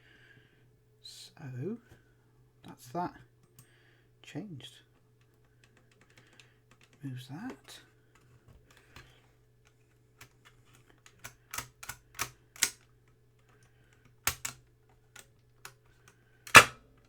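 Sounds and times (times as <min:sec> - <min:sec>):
cassette deck plastic clicks: 0:11.1 - 0:12.9, 0:14.0 - 0:14.6, 0:16.5 - 0:16.8.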